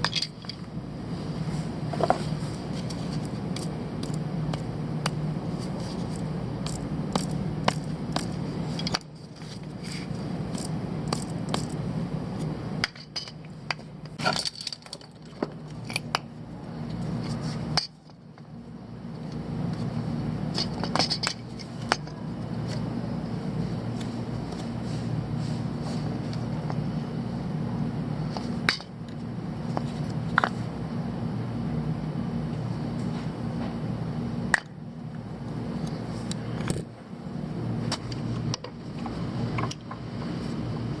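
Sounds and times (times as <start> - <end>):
metal tools clinking on engine parts: 0.0 - 0.6, 8.7 - 9.7, 14.2 - 16.2
steady low hum: 0.0 - 41.0.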